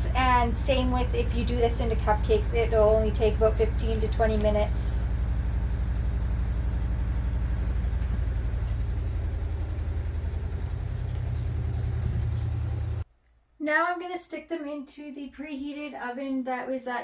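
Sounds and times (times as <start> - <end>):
low mechanical hum: 0.0 - 13.1.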